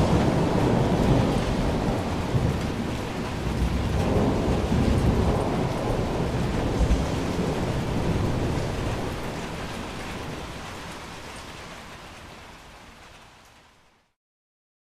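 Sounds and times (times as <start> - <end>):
low thunder rumble: 0.0 - 10.8
steady rain falling: 0.0 - 14.2.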